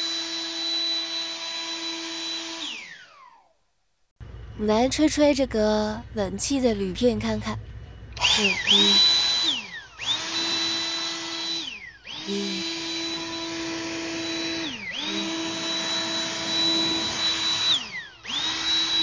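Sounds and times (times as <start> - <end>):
blower motor whining: 0.0 - 3.4, 7.5 - 19.0.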